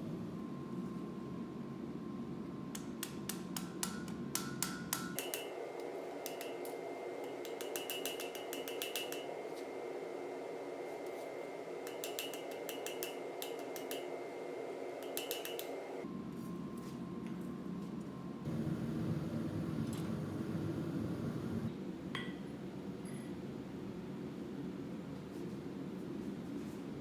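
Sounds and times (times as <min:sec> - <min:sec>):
hammer striking steel on anvil: 0:02.8 - 0:05.5.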